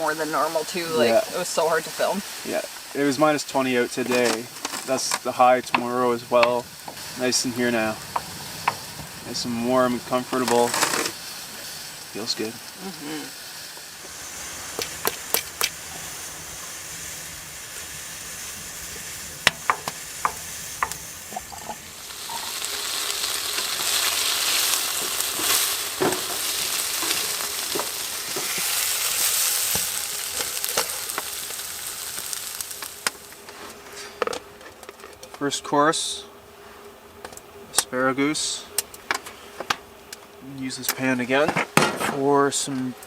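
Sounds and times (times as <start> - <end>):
asparagus sizzling in a pan: 0.0 - 41.6
pan and utensil clinking: 19.5 - 22.8.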